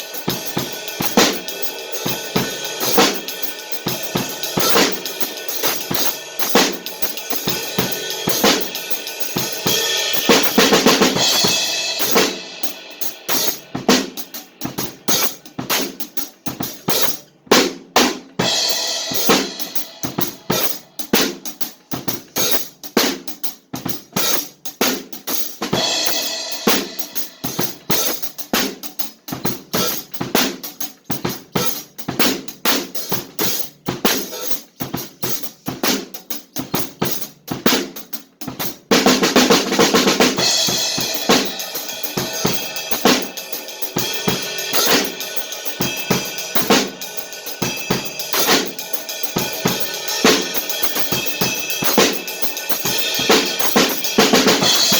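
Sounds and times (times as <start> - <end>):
cymbal wash: 0.0 - 15.4, 25.8 - 28.5, 40.4 - 54.9
drum kit beat: 0.0 - 54.9.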